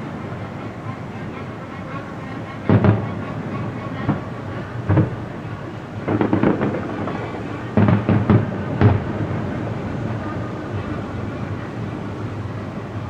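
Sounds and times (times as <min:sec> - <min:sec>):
fireworks booming: 0:02.7 - 0:12.7.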